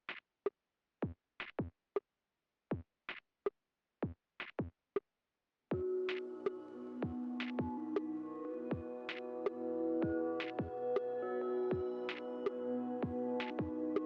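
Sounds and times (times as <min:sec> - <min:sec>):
sustained synthesizer chord: 0:05.8 - 0:14.0.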